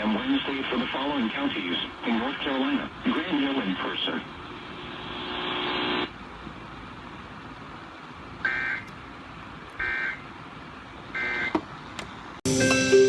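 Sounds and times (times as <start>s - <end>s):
broadcast audio: 0.0s - 6.1s, 12.5s - 13.0s
radio hiss: 0.0s - 6.1s.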